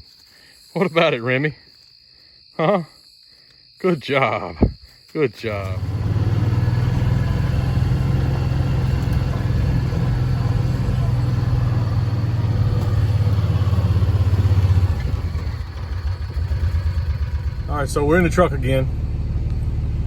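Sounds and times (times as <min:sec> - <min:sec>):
truck engine droning: 0:05.5 - 0:20.0.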